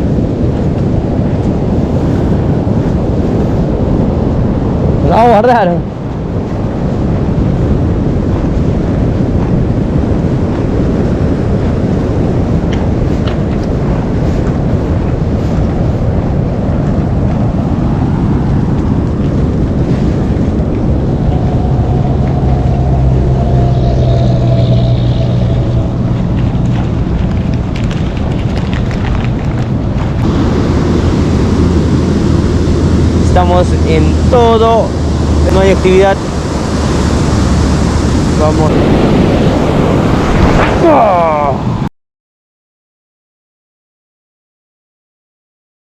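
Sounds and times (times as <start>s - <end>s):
sea surf: 0.0s - 28.1s, 29.9s - 41.9s
wind buffeting microphone: 0.0s - 41.9s
engine hum: 11.8s - 41.0s.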